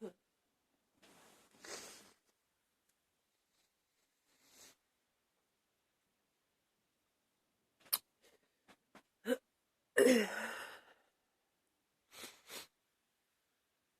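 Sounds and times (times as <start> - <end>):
catches of breath: 1.5 - 2.2
woman sniffling: 1.6 - 2.2.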